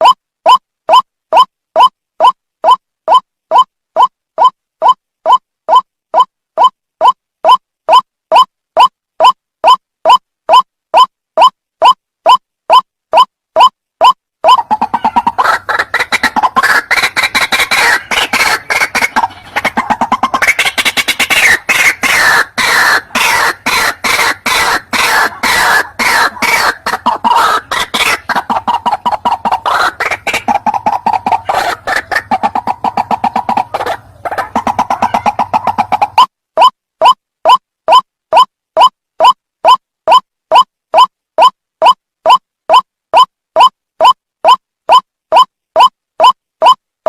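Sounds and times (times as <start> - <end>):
waterhen calls: 14.0 - 38.0.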